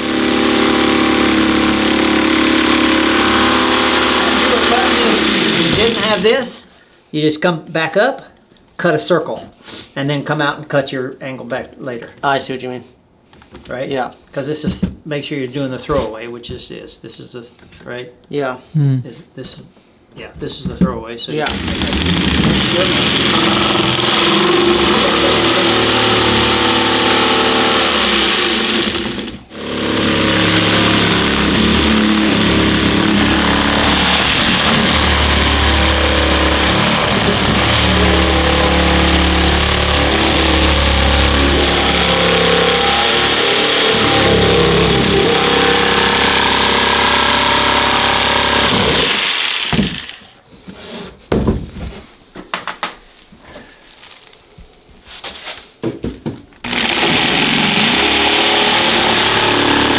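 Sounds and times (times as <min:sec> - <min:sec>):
electric jigsaw cutting: 0:00.0 - 0:06.4, 0:21.4 - 0:50.3, 0:56.6 - 0:59.9.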